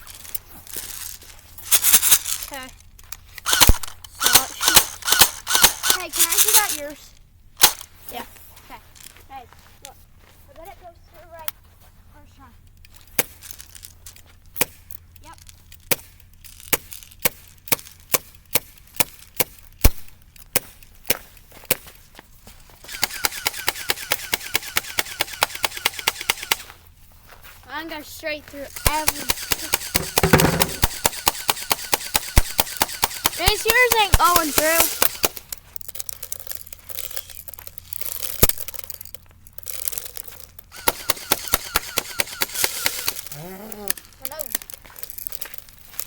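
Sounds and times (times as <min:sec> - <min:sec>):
faint clicking and handling noise: 0:00.0 - 0:04.7, 0:05.8 - 0:46.0
airsoft gun shots: 0:03.5 - 0:06.1, 0:07.6 - 0:07.8, 0:22.9 - 0:26.6, 0:28.8 - 0:35.4, 0:40.8 - 0:43.2
rapid shots with falling whine: 0:28.8 - 0:35.3, 0:40.8 - 0:43.2.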